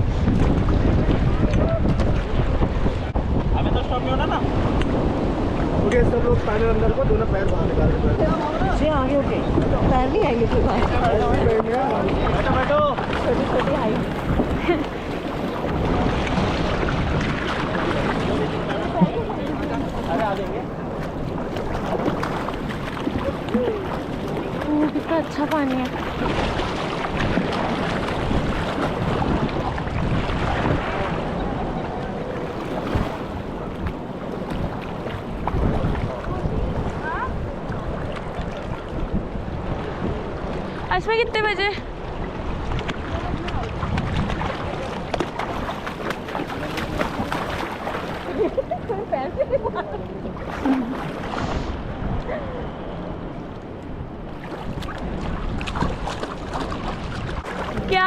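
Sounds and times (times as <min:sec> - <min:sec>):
wind noise on microphone: 0:00.0 - 0:58.0
river water rushing: 0:08.3 - 0:49.2.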